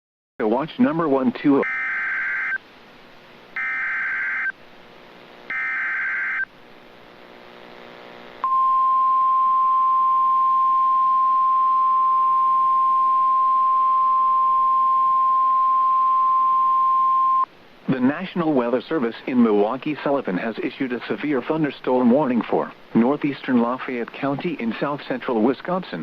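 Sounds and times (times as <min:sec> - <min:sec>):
harsh data screeches: 0:01.6 - 0:02.6, 0:03.6 - 0:04.5, 0:05.5 - 0:06.5
single-pitch warning alarm tone: 0:01.6 - 0:02.6, 0:03.6 - 0:04.5, 0:05.5 - 0:06.5.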